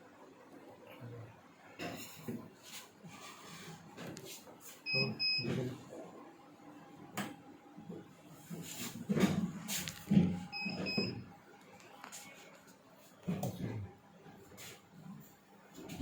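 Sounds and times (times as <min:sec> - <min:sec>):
short electronic beeps: 0:04.9 - 0:05.4, 0:10.5 - 0:11.2.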